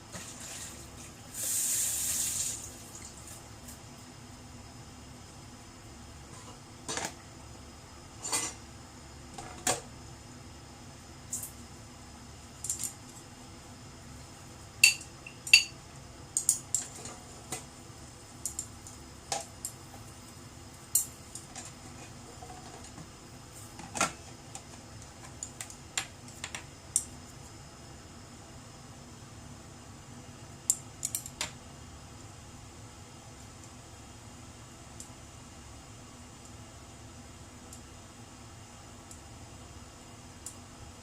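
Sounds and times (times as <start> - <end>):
faint hum: 0.0 - 41.0.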